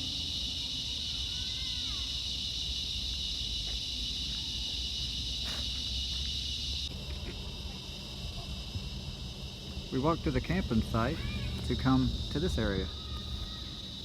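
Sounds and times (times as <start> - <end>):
insect chorus buzzing: 0.0 - 14.0
low rumble: 6.9 - 13.4.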